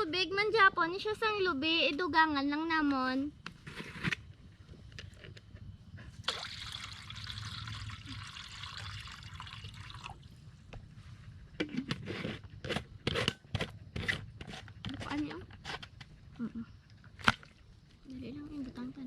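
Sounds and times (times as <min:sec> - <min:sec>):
liquid pouring into a pot: 0:06.2 - 0:10.3.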